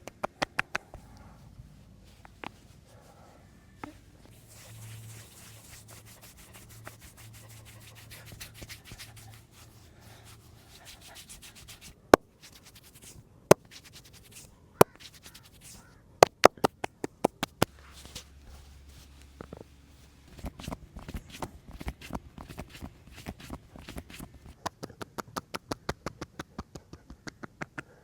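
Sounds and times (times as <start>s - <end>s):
loud sharp snaps: 0.0s - 1.0s
hands rubbing over skin: 0.1s - 27.1s.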